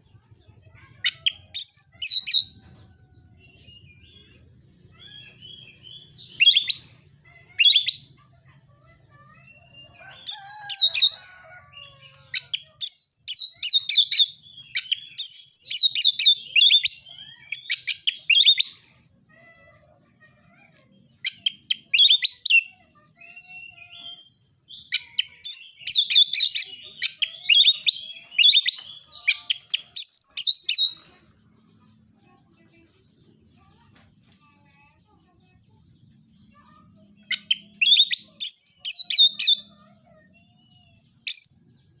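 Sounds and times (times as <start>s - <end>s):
bird singing rapid falling notes: 3.4s - 7.0s, 21.3s - 31.0s, 37.0s - 39.7s.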